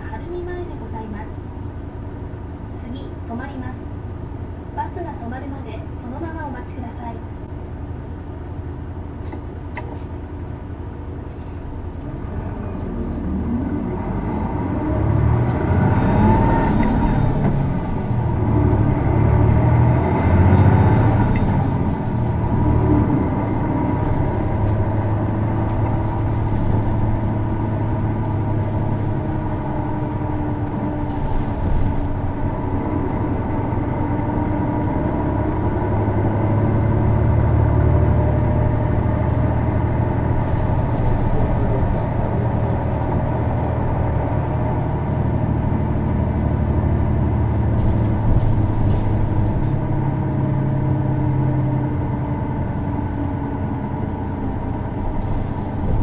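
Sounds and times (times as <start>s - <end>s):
bus engine running: 0.0s - 56.0s.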